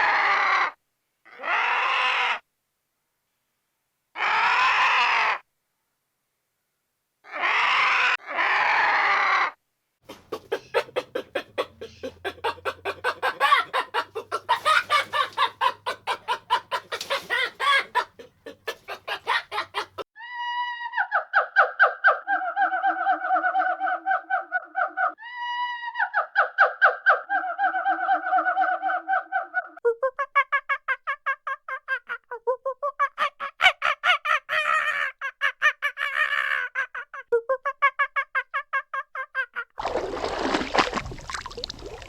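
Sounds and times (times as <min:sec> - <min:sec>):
harsh animal calls: 0:00.0 - 0:02.4, 0:04.2 - 0:05.5, 0:07.2 - 0:20.0
chickens clucking: 0:10.1 - 0:20.0.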